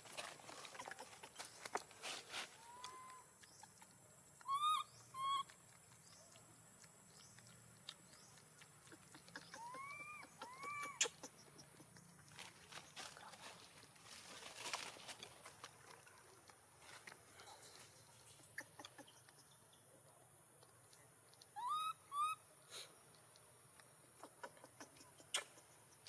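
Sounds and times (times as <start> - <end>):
baby monkey squeaky calls: 2.6 - 3.3, 4.4 - 5.6, 9.1 - 11.9, 21.5 - 22.4.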